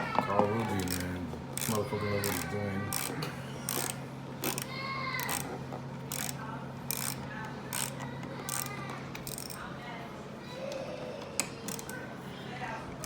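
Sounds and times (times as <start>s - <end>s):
hand ratchet clicking: 0.7s - 9.6s, 11.7s - 12.0s.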